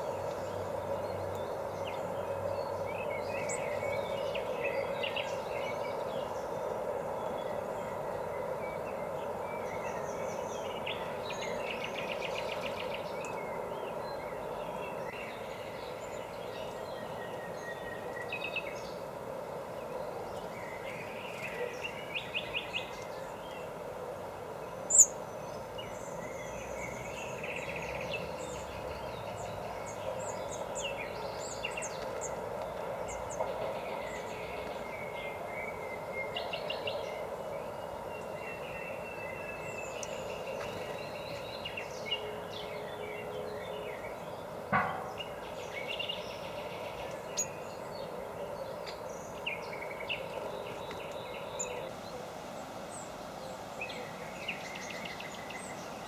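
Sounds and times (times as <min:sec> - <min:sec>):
songbirds chirping: 0:00.0 - 0:56.0
steady background hum: 0:39.1 - 0:49.8.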